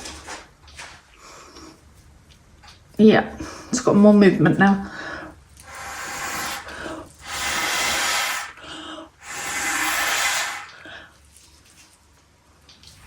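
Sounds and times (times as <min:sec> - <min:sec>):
rushes of blown air: 0:05.7 - 0:10.9.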